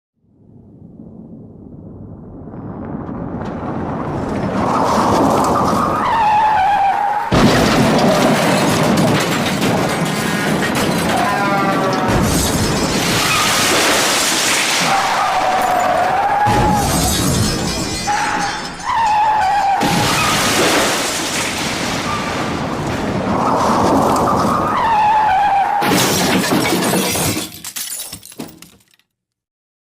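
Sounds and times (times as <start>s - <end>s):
wreck clattering: 4.4s - 24.8s
tyres squealing: 5.4s - 8.9s, 9.9s - 13.7s
glass breaking: 7.3s - 22.6s, 25.8s - 29.0s
car crash impact: 7.3s - 24.8s, 25.8s - 28.9s
tyres screeching: 9.6s - 13.7s.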